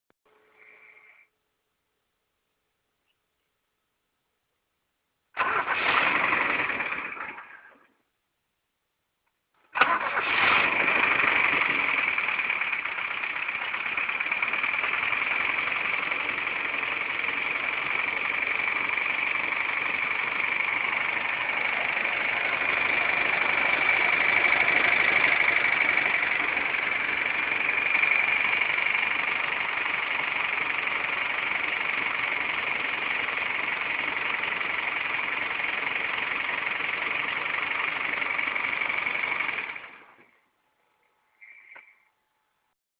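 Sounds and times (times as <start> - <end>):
car engine starting and running: 5.4 - 8.0, 9.6 - 40.4.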